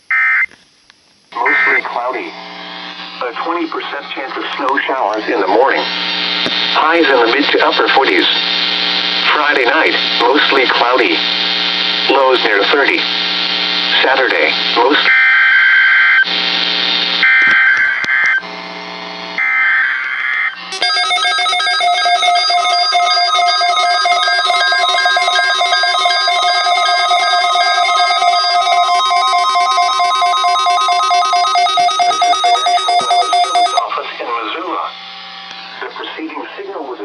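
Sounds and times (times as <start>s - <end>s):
raspy digital data bursts: 20.6s - 33.8s
steady alert tone: 20.7s - 33.9s.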